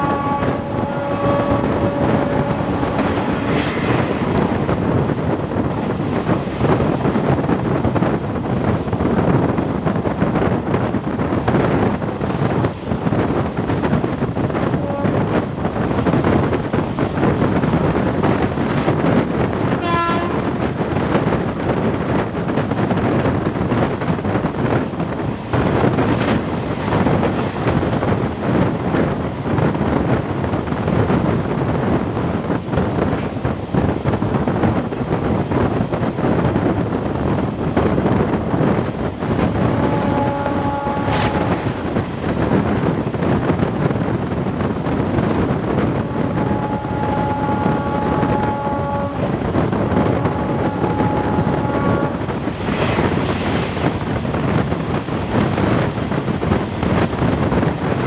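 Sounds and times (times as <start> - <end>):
locomotive horn: 0.0 - 3.5, 14.7 - 15.4, 19.7 - 20.5, 39.6 - 41.6, 46.0 - 49.4, 50.0 - 52.3
train coach running noise: 0.0 - 58.0.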